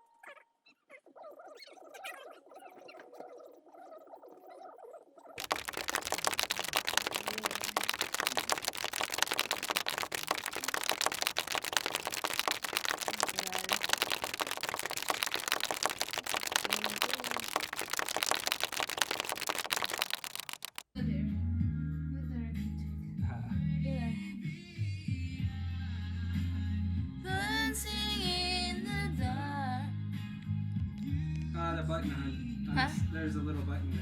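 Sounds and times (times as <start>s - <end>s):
rapid clicking and crackling: 5.4s - 20.8s.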